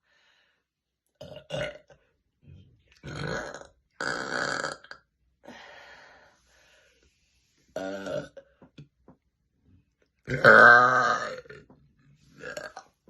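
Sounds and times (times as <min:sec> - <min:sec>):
woman burping loudly: 0:01.2 - 0:01.9, 0:03.0 - 0:05.0, 0:07.8 - 0:08.4, 0:10.3 - 0:11.7, 0:12.4 - 0:12.9.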